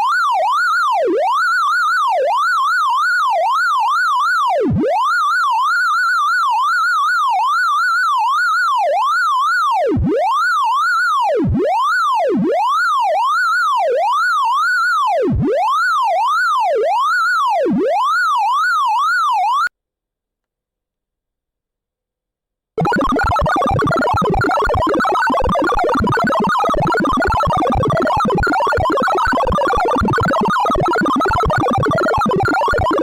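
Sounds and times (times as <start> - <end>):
electronic tone sweeping up and down: 22.8 - 33.0.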